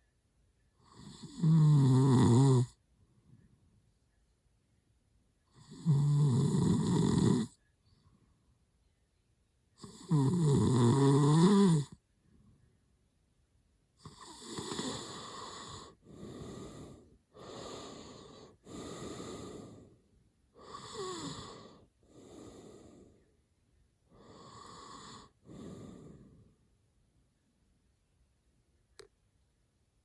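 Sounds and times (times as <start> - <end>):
man snoring: 0.9 - 2.7, 5.6 - 7.5, 9.8 - 12.0, 14.0 - 19.8, 20.6 - 23.0, 24.2 - 26.2.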